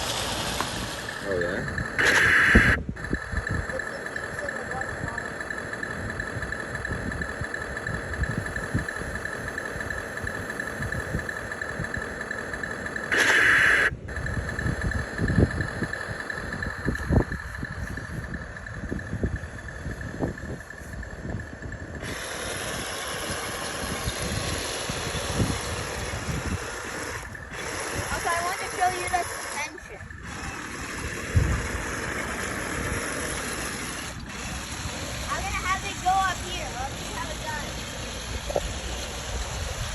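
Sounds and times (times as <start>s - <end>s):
toy tank motor whine: 0.0s - 39.9s.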